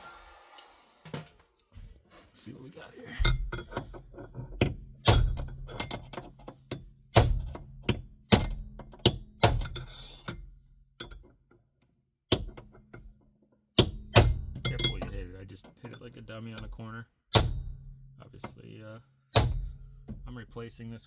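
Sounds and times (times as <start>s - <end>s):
hammer striking metal punch: 4.6s - 6.2s, 7.1s - 10.4s, 13.8s - 15.2s, 17.3s - 17.9s, 19.4s - 19.8s.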